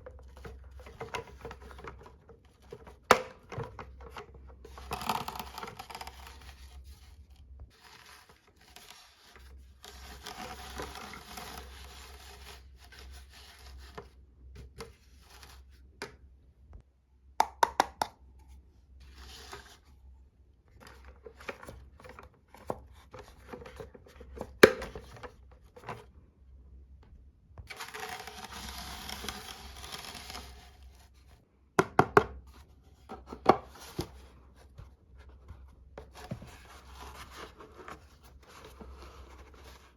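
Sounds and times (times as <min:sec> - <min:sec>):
toy packaging rustling and tearing: 0:27.7 - 0:31.1.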